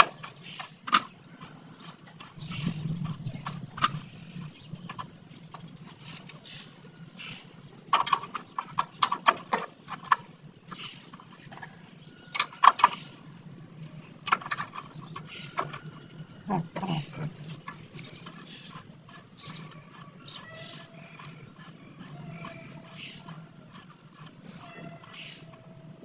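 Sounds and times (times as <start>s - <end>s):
low steady hum: 1.2s - 26.0s
hand tools knocking and clicking: 7.9s - 11.7s, 12.3s - 13.1s, 14.2s - 25.8s.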